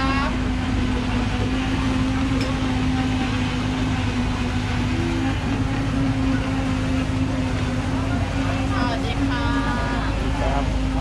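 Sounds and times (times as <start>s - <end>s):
low mechanical drone: 0.0s - 11.0s.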